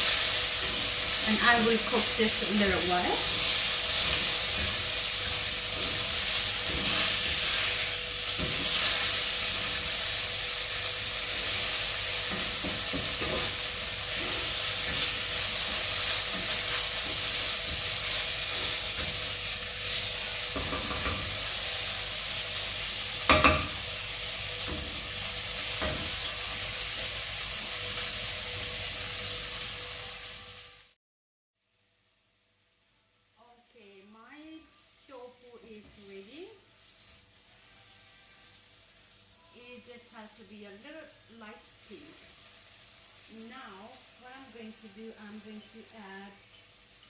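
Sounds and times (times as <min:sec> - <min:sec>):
utensil scraping a pan: 0:00.0 - 0:22.0
tofu sizzling in oil: 0:00.0 - 0:31.0, 0:31.6 - 0:47.0
utensil clanking against pan: 0:20.5 - 0:21.4, 0:23.2 - 0:23.9.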